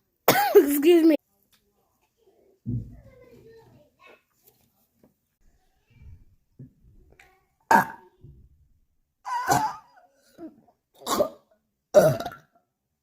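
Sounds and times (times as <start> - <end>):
person coughing: 0.3 - 0.8, 9.3 - 11.4.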